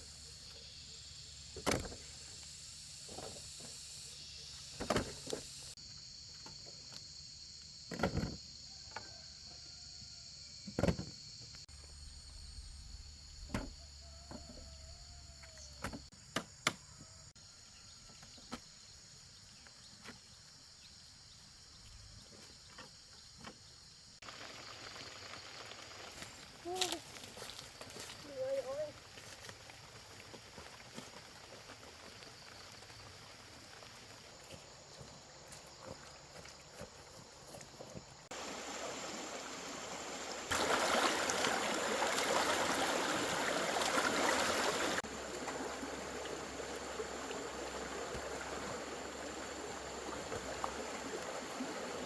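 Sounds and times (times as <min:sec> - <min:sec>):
insect chirring: 0:00.0 - 0:19.7, 0:20.5 - 0:37.2.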